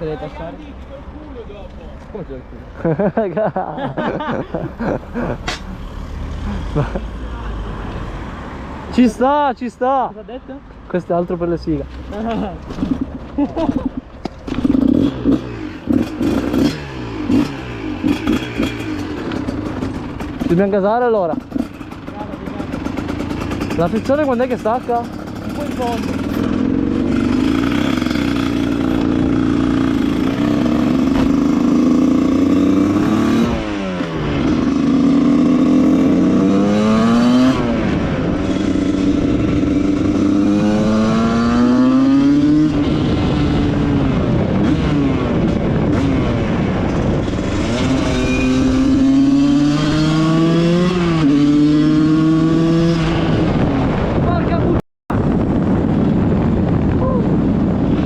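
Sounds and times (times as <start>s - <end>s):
two-stroke engine accelerating: 12.1s - 54.2s.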